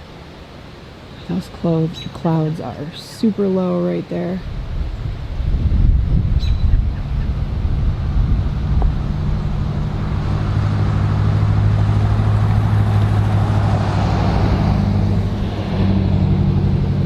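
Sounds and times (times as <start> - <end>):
road noise: 0.0 - 17.0
car engine hum: 6.0 - 17.0.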